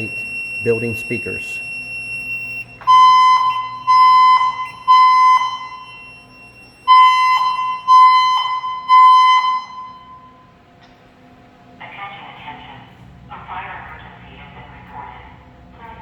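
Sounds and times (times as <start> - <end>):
fire alarm beeping: 0.0 - 10.6.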